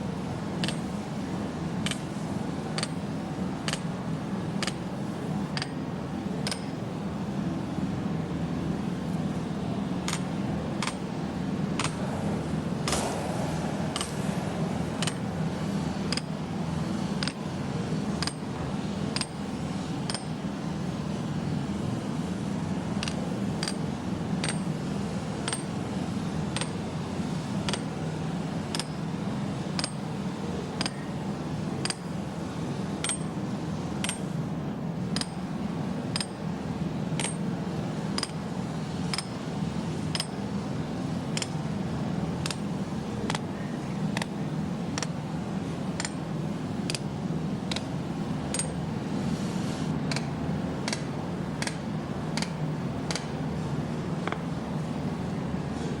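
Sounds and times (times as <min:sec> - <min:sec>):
steady low hum: 0:00.0 - 0:56.0
sharp metallic clicks: 0:00.6 - 0:00.9, 0:03.7 - 0:03.9, 0:06.4 - 0:06.7, 0:10.1 - 0:11.0, 0:46.0 - 0:46.2, 0:50.9 - 0:51.8.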